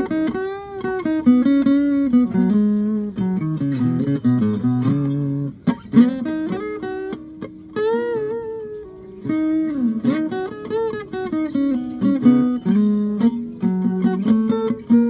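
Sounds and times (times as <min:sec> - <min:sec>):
guitar picking with bent notes: 0:00.0 - 0:15.0.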